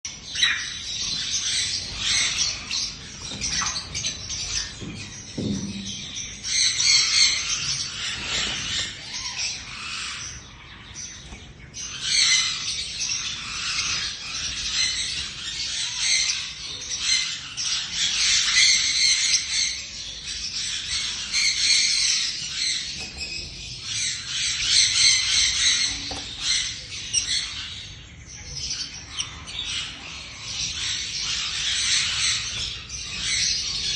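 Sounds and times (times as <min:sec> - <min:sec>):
lovebird chirping and squawking: 0:23.9 - 0:28.0, 0:28.7 - 0:33.9.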